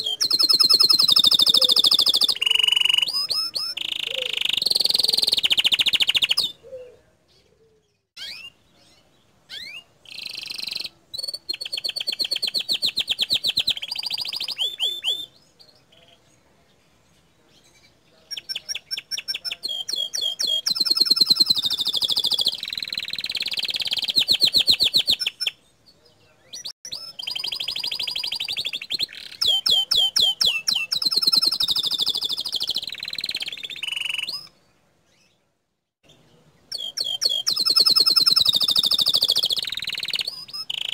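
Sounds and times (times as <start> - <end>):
short bird chirps: 0.0 - 6.6, 8.2 - 16.2, 26.4 - 35.4, 36.0 - 40.9
canary singing trills: 0.0 - 35.4, 36.0 - 40.9.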